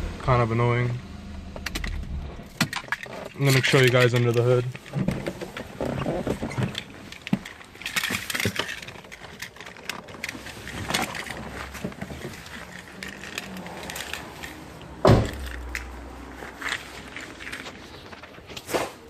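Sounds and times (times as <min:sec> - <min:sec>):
car doors and hood clicking: 0:14.8 - 0:15.9
loud thump: 0:15.0 - 0:15.4.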